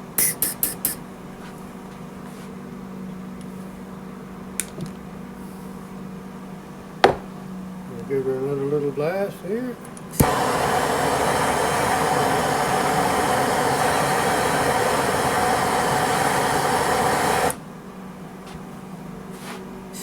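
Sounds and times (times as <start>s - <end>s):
welder arc buzzing: 10.1s - 17.6s.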